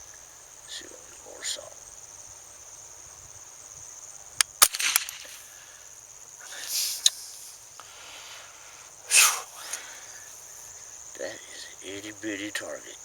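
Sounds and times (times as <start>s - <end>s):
insect chirring: 0.0s - 13.0s
small clicks: 4.4s - 5.4s
rifle cracks: 4.4s - 5.6s.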